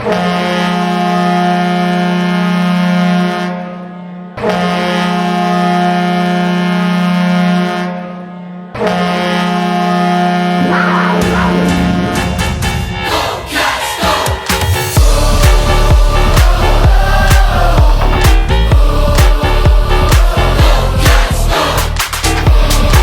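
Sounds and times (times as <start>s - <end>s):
low reedy goal horn blasts: 0.0s - 12.9s.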